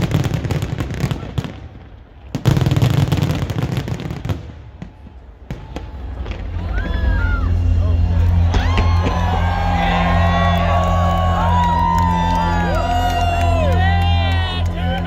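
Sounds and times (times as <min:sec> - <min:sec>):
firework booms: 0:02.4 - 0:09.6.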